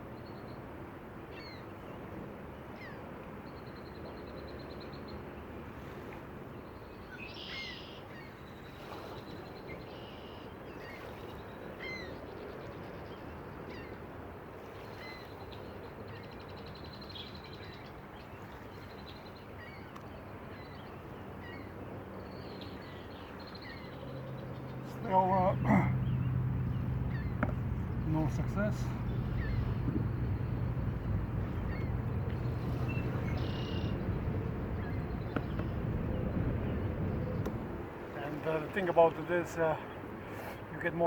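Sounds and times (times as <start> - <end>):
birds chirping and trilling: 7.0 - 8.6, 20.5 - 40.1.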